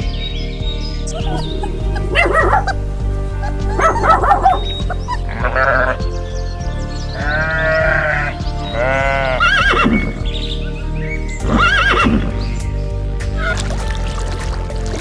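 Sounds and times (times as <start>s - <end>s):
background music: 0.0s - 15.0s
farm animal calls: 1.1s - 6.3s, 7.2s - 10.1s.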